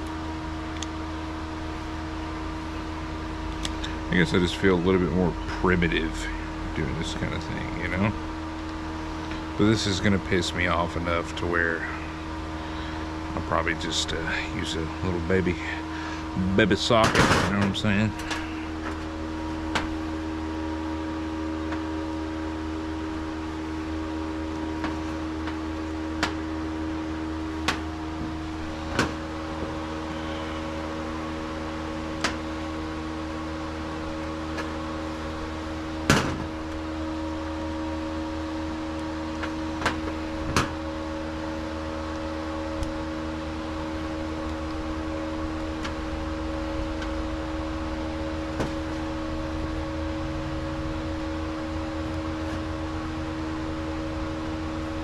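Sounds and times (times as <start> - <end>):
steady machine hum: 0.0 - 55.0.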